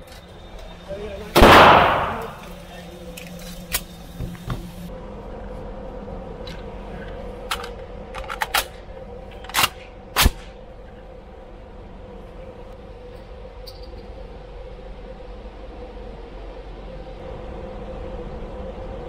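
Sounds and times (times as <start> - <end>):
gunshots: 1.4 - 2.4.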